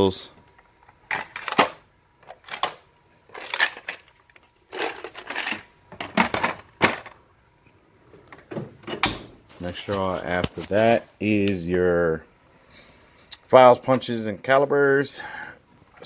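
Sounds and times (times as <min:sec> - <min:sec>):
metal tools clinking and rattling: 0:01.0 - 0:07.2.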